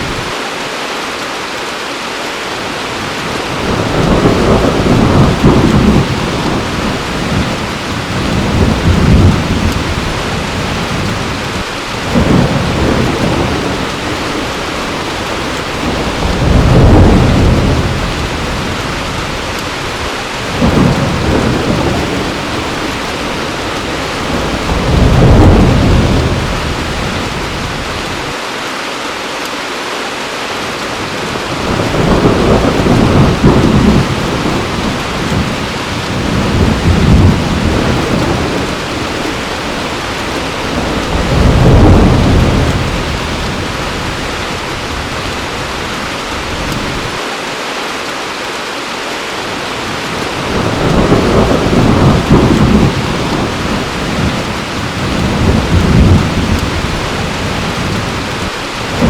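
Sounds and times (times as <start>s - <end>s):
heavy rain falling: 0.0s - 59.0s
rolls of thunder: 3.4s - 19.0s, 20.4s - 28.1s, 31.5s - 45.1s, 50.2s - 59.0s.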